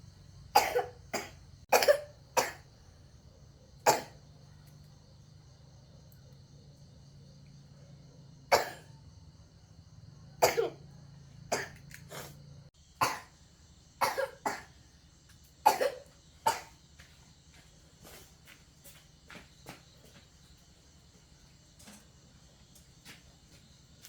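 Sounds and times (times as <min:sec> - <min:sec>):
woman coughing: 0:00.6 - 0:02.6, 0:03.9 - 0:04.2, 0:08.5 - 0:08.9, 0:10.4 - 0:10.8, 0:13.0 - 0:13.3, 0:14.0 - 0:14.7, 0:15.7 - 0:16.7.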